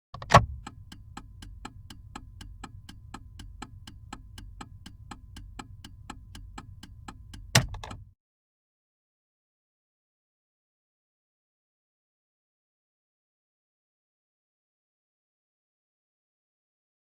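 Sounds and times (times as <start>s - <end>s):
even ticking: 0.2s - 8.1s
low engine rumble: 0.2s - 8.1s
loud click: 5.9s - 8.0s.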